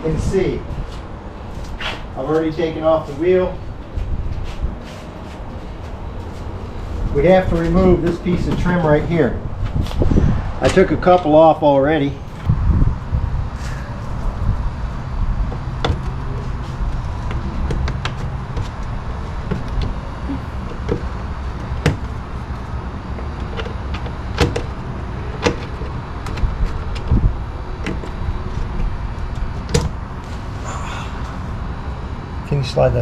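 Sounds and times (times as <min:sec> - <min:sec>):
steady low rumble: 0:00.0 - 0:33.0.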